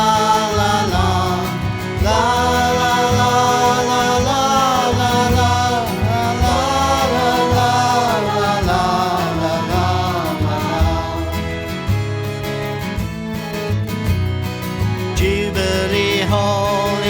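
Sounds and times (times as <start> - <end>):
person singing la la melody: 0.0 - 11.9
backing instruments with steady beat: 0.0 - 17.0.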